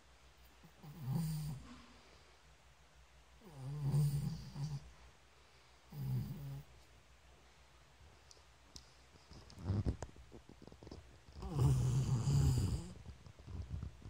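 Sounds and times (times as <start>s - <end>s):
person snoring: 3.4s - 4.8s, 11.4s - 13.0s.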